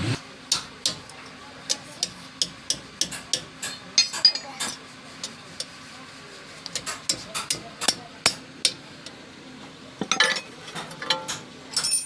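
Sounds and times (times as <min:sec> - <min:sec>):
hand tools clinking on metal: 0:10.1 - 0:12.0.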